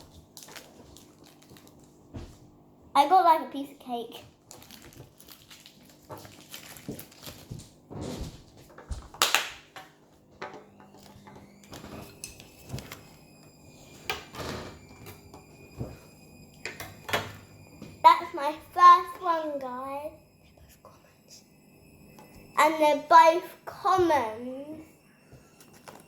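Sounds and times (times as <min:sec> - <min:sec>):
plastic toy packaging handled: 0:00.3 - 0:01.9, 0:04.5 - 0:07.7.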